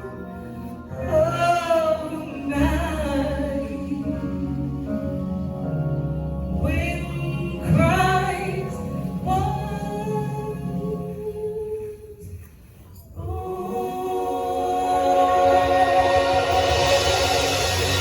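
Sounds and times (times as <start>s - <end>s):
keyboard and bass accompaniment: 0.0s - 12.6s, 13.2s - 18.0s
woman singing: 0.9s - 4.9s, 6.6s - 12.2s, 13.2s - 17.5s.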